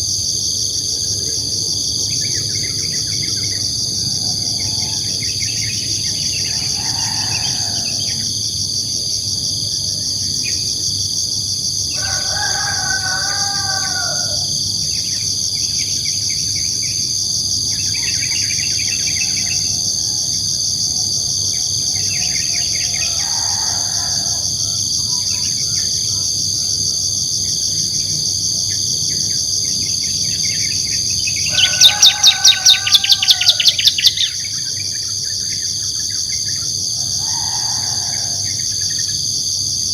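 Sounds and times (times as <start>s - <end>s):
insect chorus: 0.0s - 39.9s
long drawn-out multi-pitched call: 2.2s - 8.4s, 30.2s - 39.1s
bird calls: 31.3s - 34.7s.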